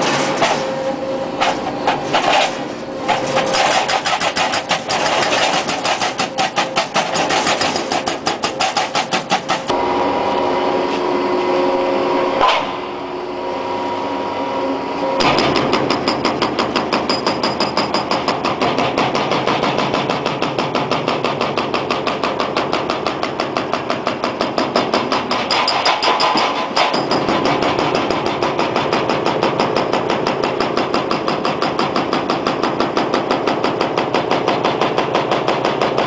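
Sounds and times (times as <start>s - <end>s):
hydraulic breaker hammering: 0.0s - 10.0s, 15.1s - 36.0s
hydraulic hum: 9.4s - 17.2s.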